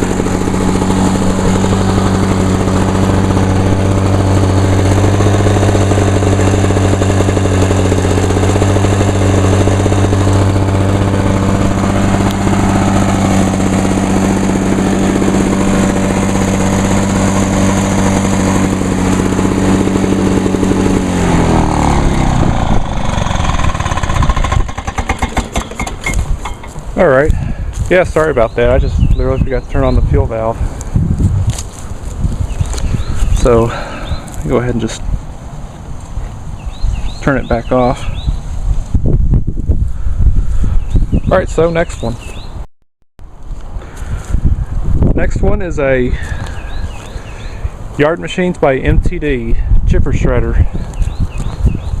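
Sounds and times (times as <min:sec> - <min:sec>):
lawn mower engine running: 0:00.0 - 0:28.5, 0:29.6 - 0:38.8, 0:43.2 - 0:49.0.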